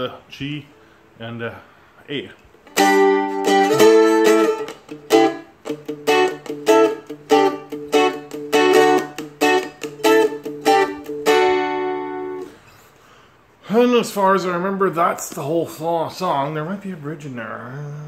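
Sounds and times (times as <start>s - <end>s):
strumstick strummed rhythmically: 2.7s - 12.6s.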